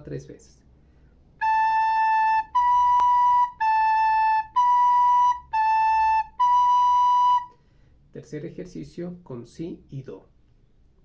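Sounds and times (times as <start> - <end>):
recorder playing slow notes: 1.4 - 7.6.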